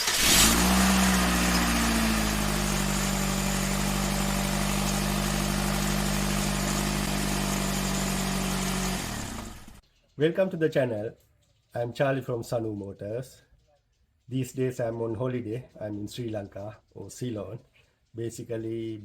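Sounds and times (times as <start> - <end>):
car engine idling: 0.0 - 9.8.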